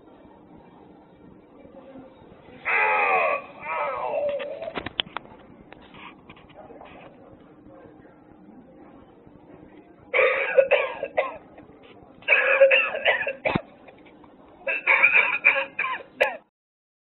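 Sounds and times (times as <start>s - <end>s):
recorded hacking cough: 10.2s - 11.6s, 12.2s - 14.1s, 14.7s - 16.5s.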